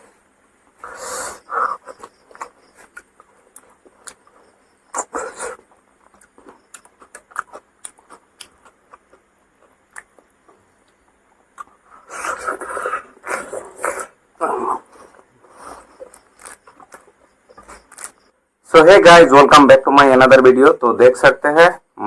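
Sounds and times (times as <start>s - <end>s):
chewing mouth clicks and smacks: 1.9s - 11.8s, 15.9s - 18.2s.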